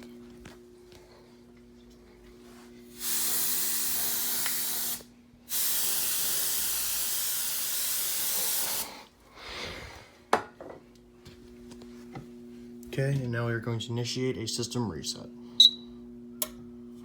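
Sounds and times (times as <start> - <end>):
aerosol can spraying hiss: 3.0 - 8.9.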